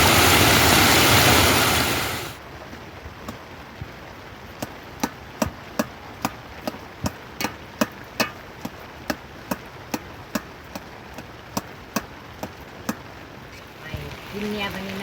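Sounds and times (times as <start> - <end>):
tool striking hard surface: 5.0 - 10.5.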